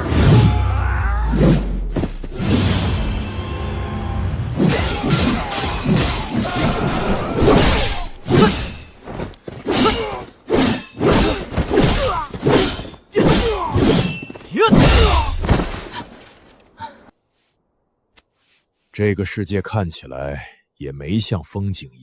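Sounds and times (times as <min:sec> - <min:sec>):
shouts and grunts: 0:00.0 - 0:01.4, 0:03.8 - 0:08.7, 0:11.2 - 0:12.4, 0:13.1 - 0:15.5
swords clashing: 0:04.6 - 0:09.0, 0:09.6 - 0:15.4.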